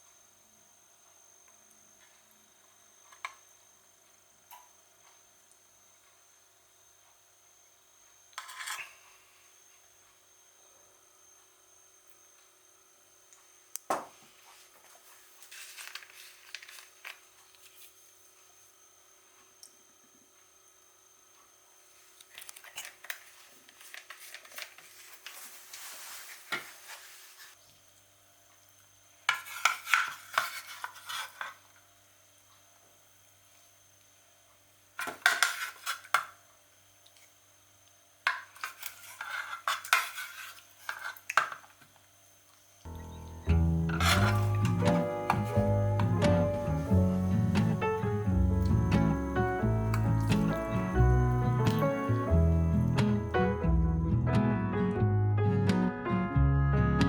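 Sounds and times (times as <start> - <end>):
small clicks and scraping: 22.2 - 25.8, 29.3 - 31.6, 35.0 - 36.3, 38.3 - 41.7
utensil scraping a metal tin: 29.3 - 31.6, 35.0 - 36.2, 38.6 - 41.2, 43.5 - 46.2.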